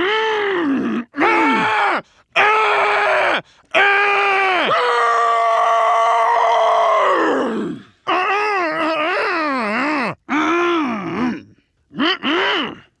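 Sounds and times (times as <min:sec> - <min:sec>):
person groaning: 0:07.2 - 0:12.9.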